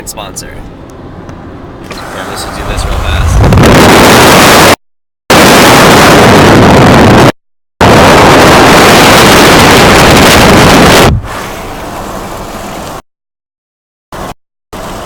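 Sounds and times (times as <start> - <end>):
loud distorted rushing noise: 2.0 - 11.4.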